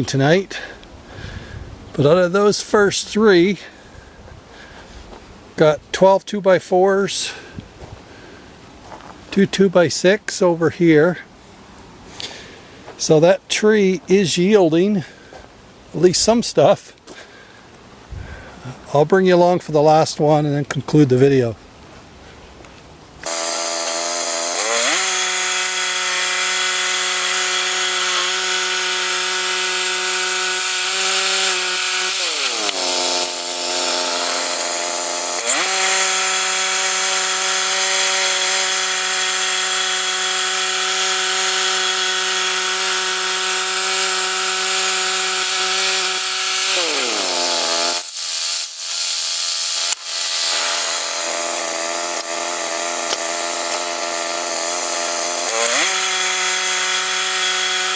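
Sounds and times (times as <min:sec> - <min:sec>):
chainsaw cutting wood: 0:23.2 - 0:57.9.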